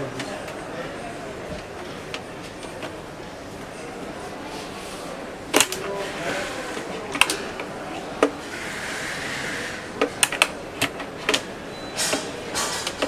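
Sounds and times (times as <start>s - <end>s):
lock parts clicking and knocking: 10.0s - 13.0s.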